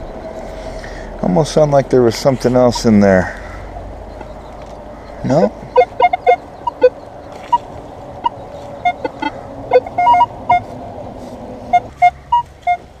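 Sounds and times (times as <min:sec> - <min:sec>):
metal detector beeping: 0:04.1 - 0:07.6, 0:08.2 - 0:10.7, 0:11.7 - 0:13.0.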